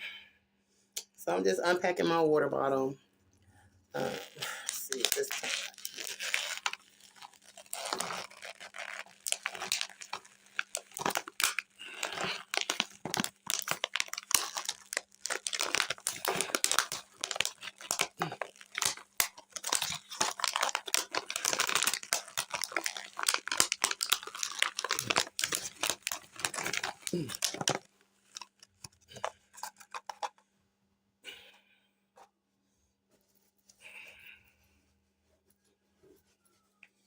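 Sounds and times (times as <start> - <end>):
plastic bottle crinkling and tearing: 4.0 - 30.4.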